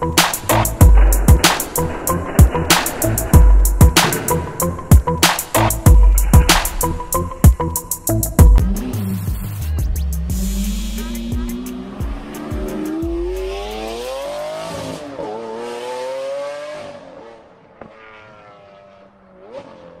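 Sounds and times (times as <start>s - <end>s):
race car engine revving: 8.6s - 20.0s.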